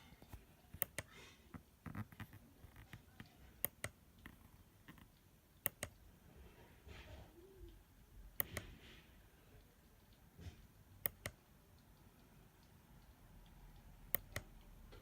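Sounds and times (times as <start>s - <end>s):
sharp clicks: 0.2s - 1.1s, 3.2s - 6.1s, 8.4s - 8.8s, 11.0s - 15.0s.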